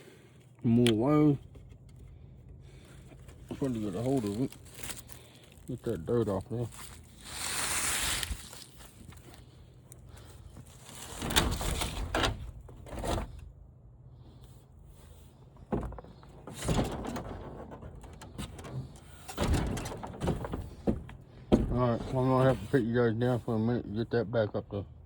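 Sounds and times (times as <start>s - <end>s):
tv parts scraping and knocking: 5.9s - 13.5s, 15.0s - 22.8s.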